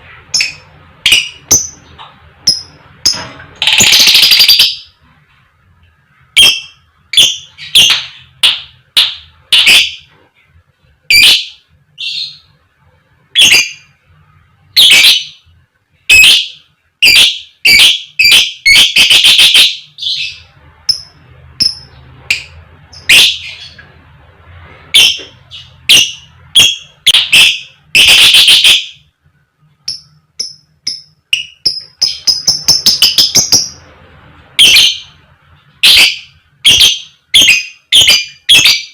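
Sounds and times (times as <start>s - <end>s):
lovebird calling: 16.1s - 23.9s, 24.9s - 29.0s, 29.9s - 33.8s, 34.6s - 35.2s, 35.8s - 38.9s.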